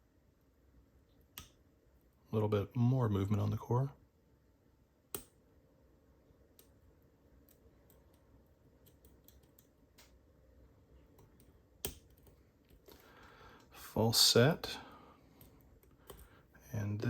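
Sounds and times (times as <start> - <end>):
lock pick clicking on pins: 11.1 - 12.8.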